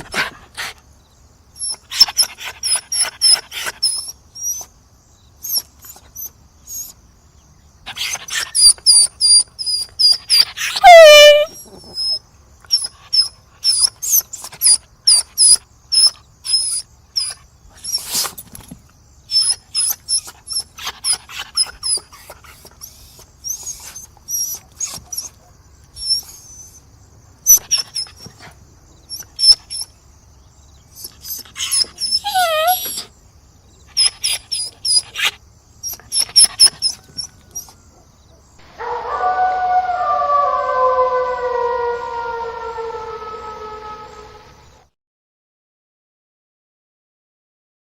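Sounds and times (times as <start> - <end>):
dog howling: 10.4 - 12.2, 31.0 - 33.1, 35.9 - 44.8.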